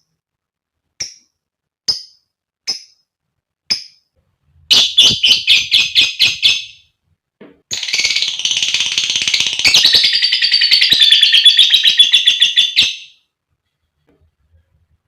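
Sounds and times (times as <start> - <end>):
lovebird calling: 4.7 - 6.8.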